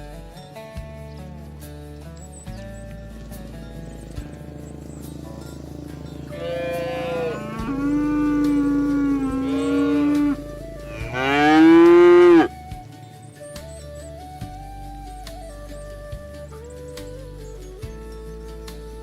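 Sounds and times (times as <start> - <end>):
cattle mooing: 5.0 - 12.6.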